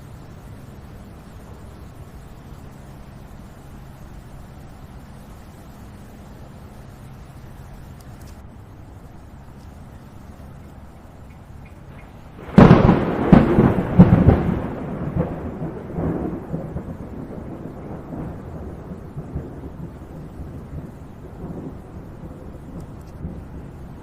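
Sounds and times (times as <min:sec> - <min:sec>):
rain hissing: 0:00.0 - 0:24.0
thunder cracking and rumbling: 0:08.8 - 0:24.0.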